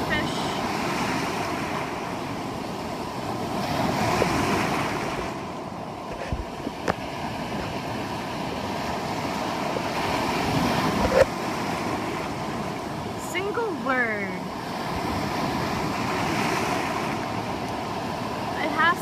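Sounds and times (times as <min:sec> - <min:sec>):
wind on microphone: 0:00.0 - 0:13.2
ocean surf washing on shore: 0:00.0 - 0:19.0.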